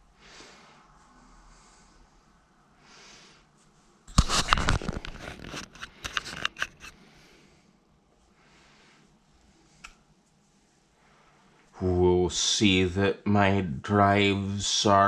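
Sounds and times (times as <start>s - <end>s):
faint breathing: 0.0s - 3.6s, 6.9s - 10.0s, 10.8s - 11.8s.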